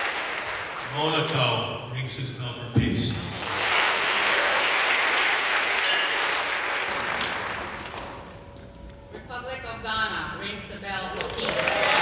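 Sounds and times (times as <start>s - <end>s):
audience applauding: 0.0s - 1.2s, 3.2s - 8.2s, 11.2s - 12.0s.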